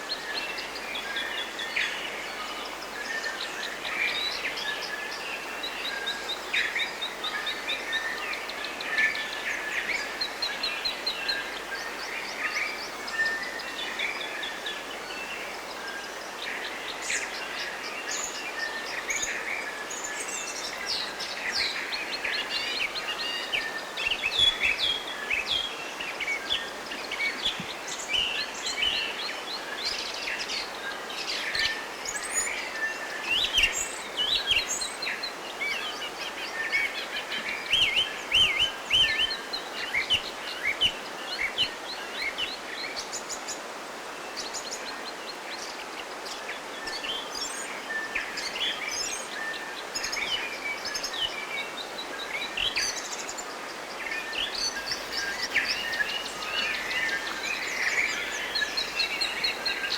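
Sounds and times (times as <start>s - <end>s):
steady background hiss: 0.0s - 59.9s
songbirds chirping and singing: 44.4s - 59.9s.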